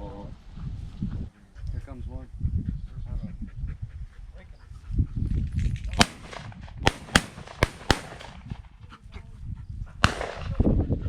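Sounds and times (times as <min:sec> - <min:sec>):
shotgun shots: 0:05.9 - 0:08.8, 0:10.0 - 0:10.6.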